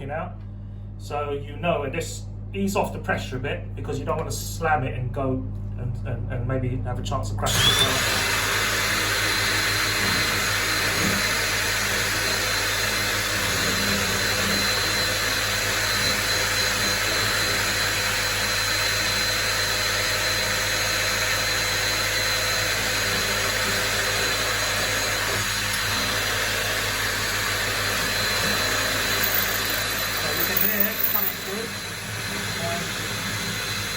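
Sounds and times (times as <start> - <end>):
electric drill grinding tile: 7.5 - 33.9.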